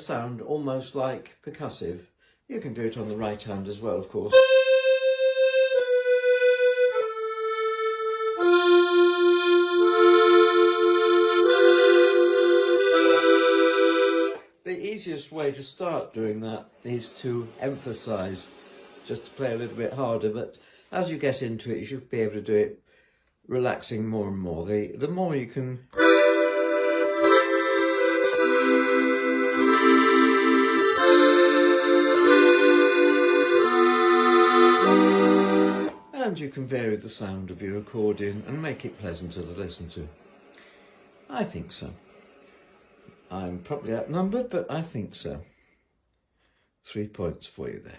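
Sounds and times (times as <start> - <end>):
piano accordion playing: 4.3 - 14.4, 26.0 - 36.2.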